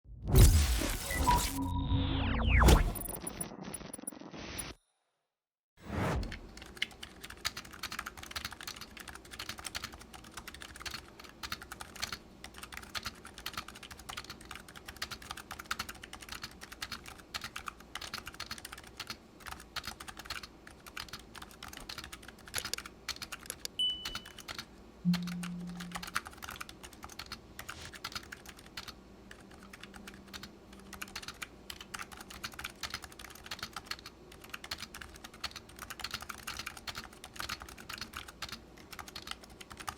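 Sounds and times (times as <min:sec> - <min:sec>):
keyboard typing: 0:06.3 - 0:39.9
short low tone: 0:25.1 - 0:26.2.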